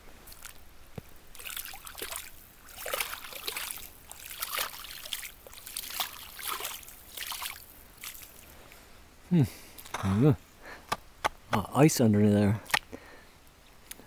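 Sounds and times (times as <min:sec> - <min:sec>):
meltwater trickling and gurgling: 0:01.3 - 0:08.8.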